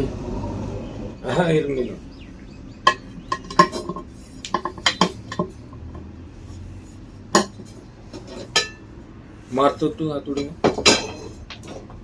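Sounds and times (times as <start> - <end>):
metal tools clinking: 2.9 - 5.6, 10.3 - 11.9.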